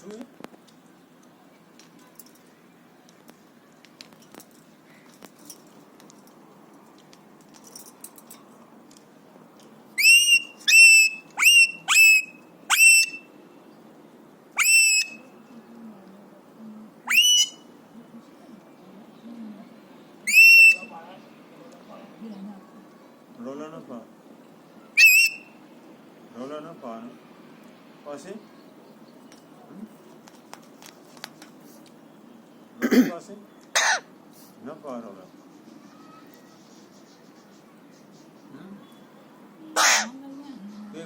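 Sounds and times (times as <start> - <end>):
parakeet whistling: 10.0 - 13.3, 14.6 - 15.2, 17.1 - 17.6, 20.3 - 20.9, 25.0 - 25.5.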